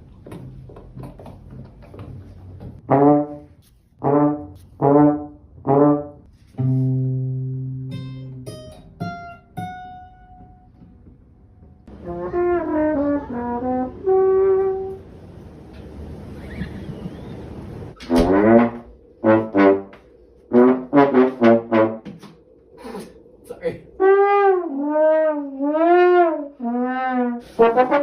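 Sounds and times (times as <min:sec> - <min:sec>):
brass blasts: 0:02.8 - 0:07.9, 0:11.9 - 0:15.3, 0:18.0 - 0:22.4, 0:24.0 - 0:28.0
descending brass run: 0:11.9 - 0:15.4, 0:16.3 - 0:22.4, 0:23.9 - 0:28.0
low brass note: 0:18.1 - 0:22.9, 0:24.0 - 0:28.0.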